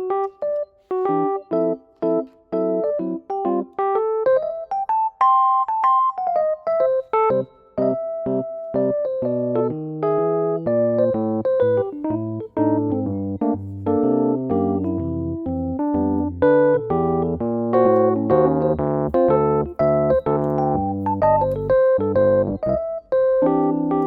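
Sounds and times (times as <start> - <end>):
soft electric piano melody: 0.0 - 24.0
bass notes: 7.3 - 24.0.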